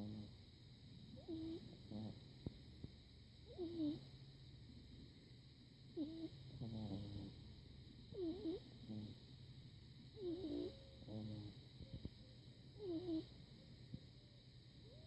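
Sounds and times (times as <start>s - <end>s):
puppy snoring: 0.0s - 0.4s, 1.2s - 2.3s, 3.4s - 4.1s, 6.0s - 7.4s, 8.1s - 9.3s, 10.2s - 11.6s, 12.8s - 13.3s.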